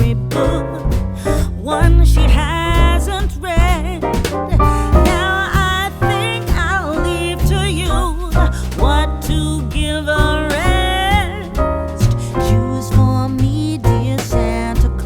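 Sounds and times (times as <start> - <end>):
instrumental accompaniment with bass: 0.0 - 15.0.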